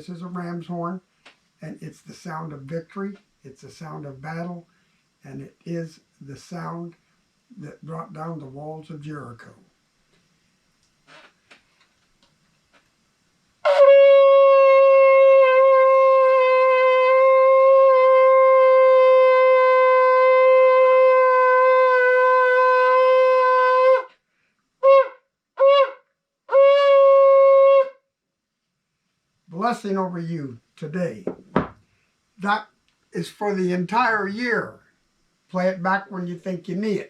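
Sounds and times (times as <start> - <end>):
shofar blasts: 13.6 - 24.2, 24.8 - 28.0.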